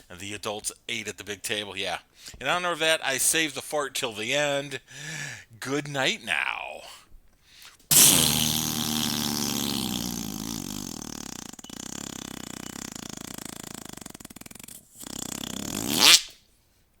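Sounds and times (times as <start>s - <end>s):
fart: 7.9s - 16.4s.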